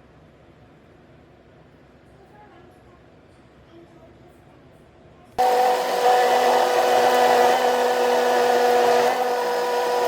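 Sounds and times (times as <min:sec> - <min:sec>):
small electric motor whirring: 0:05.4 - 0:10.0.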